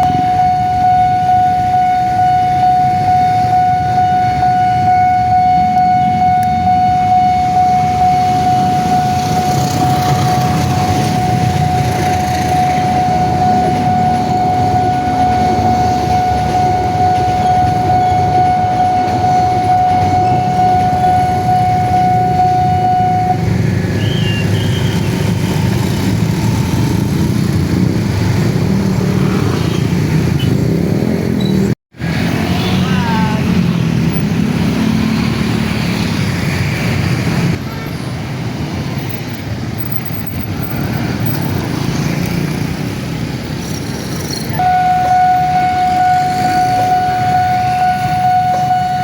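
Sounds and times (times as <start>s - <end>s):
level-crossing alarm tone: 0.0s - 30.0s, 44.5s - 49.0s
low rumble of passing vehicles: 0.0s - 49.0s.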